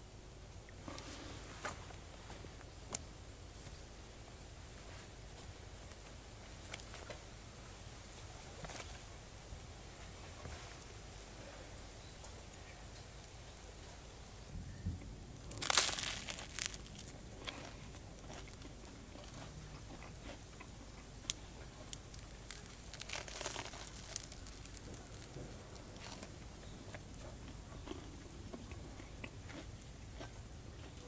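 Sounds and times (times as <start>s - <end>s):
small crackles: 15.0s - 31.0s
crunchy bread bite: 15.3s - 28.1s
chewing: 15.4s - 31.0s.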